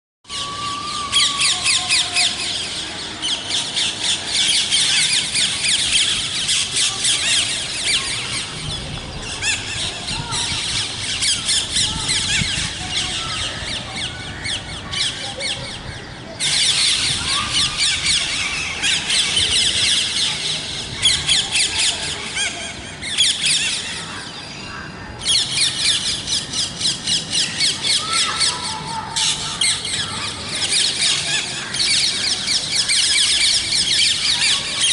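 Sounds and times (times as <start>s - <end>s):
parrots screeching and chattering: 0.3s - 34.9s.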